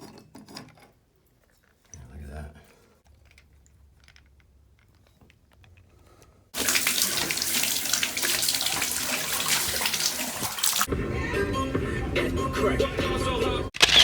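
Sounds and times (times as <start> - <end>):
faucet water running: 6.6 - 10.9.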